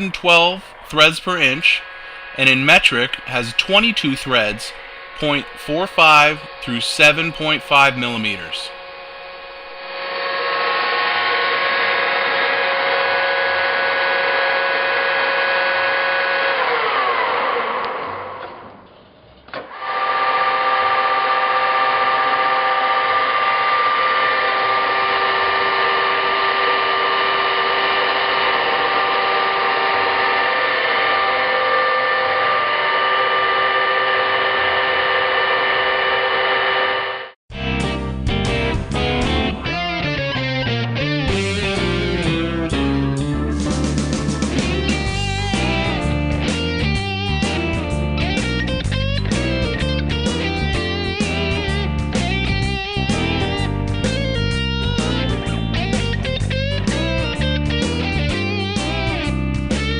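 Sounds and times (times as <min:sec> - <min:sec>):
lathe running with a steady whine: 0:00.0 - 0:18.7, 0:19.5 - 0:37.4.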